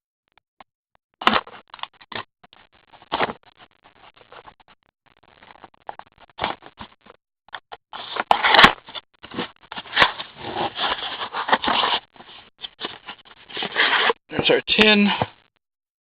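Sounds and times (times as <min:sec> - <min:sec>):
cardboard clicks and scrapes: 0:01.2 - 0:02.2, 0:02.9 - 0:03.4, 0:07.9 - 0:14.2.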